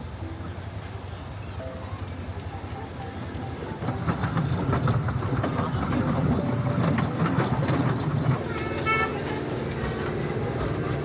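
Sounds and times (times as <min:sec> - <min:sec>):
train wheels rattling over rails: 0:03.4 - 0:11.0
high wheel squeal: 0:03.8 - 0:09.4.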